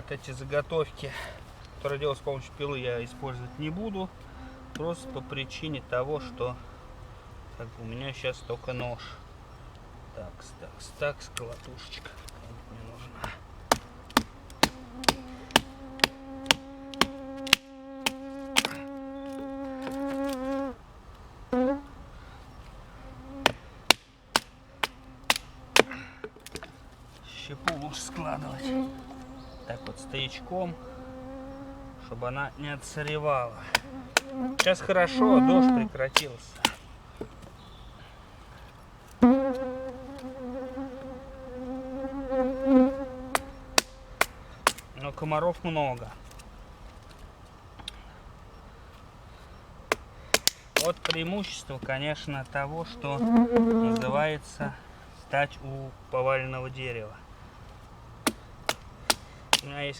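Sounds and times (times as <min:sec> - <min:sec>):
flying insect buzzing: 0:01.6 - 0:08.1, 0:12.5 - 0:36.1, 0:39.1 - 0:44.7, 0:52.5 - 0:54.8.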